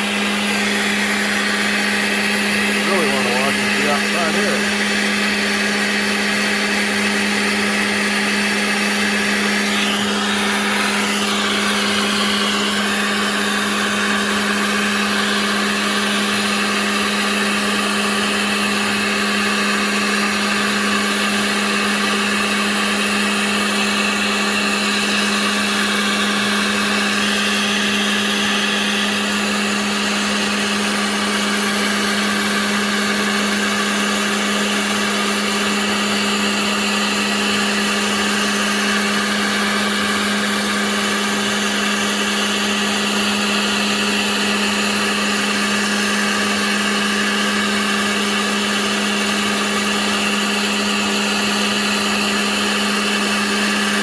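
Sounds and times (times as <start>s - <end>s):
bit cutting noise: 0.0s - 5.2s
router spindle steady tone: 0.0s - 54.0s.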